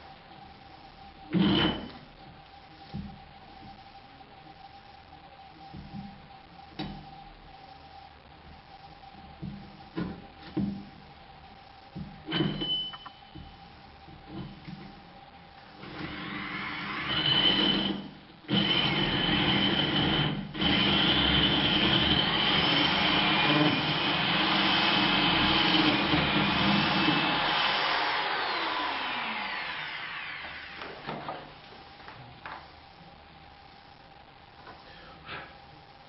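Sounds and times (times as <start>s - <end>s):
power drill boring into wall: 15.8s - 31.2s.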